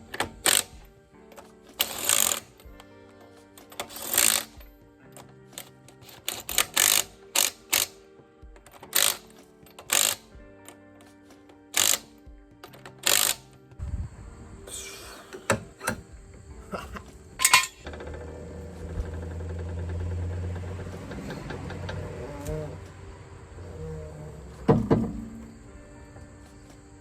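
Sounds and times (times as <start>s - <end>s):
background music: 0.0s - 27.0s
hand ratchet ratcheting: 0.1s - 0.8s, 1.8s - 2.6s, 3.7s - 4.6s, 5.6s - 8.0s, 8.8s - 10.3s, 11.7s - 12.1s, 13.0s - 13.4s, 16.8s - 23.0s.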